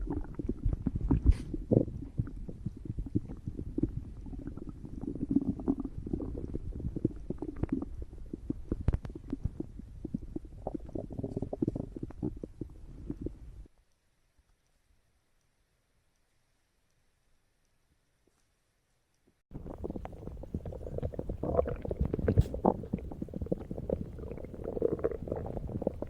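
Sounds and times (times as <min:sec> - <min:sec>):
stomach growling and gurgling: 0:00.0 - 0:13.7, 0:19.5 - 0:26.0.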